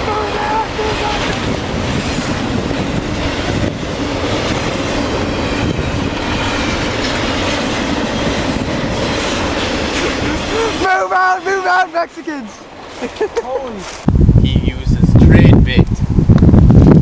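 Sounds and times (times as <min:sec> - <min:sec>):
train wheels rumbling on rails: 0:00.0 - 0:17.0.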